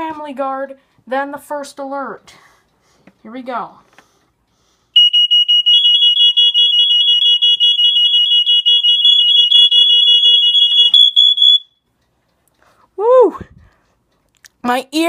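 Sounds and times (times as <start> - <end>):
smoke alarms beeping rapidly: 5.0 - 11.9.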